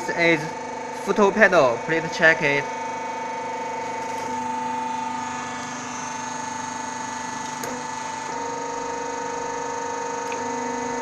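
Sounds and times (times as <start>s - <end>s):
hydraulic machine hum: 0.0s - 11.0s.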